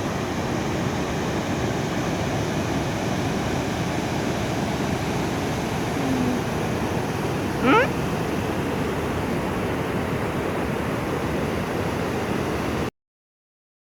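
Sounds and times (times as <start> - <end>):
waterfall roaring: 3.3 - 10.6.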